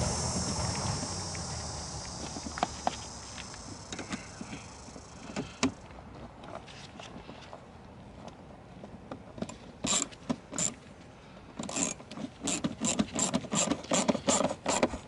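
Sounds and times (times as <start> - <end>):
ratchet wrench clicking: 0.0 - 5.7, 11.6 - 14.9.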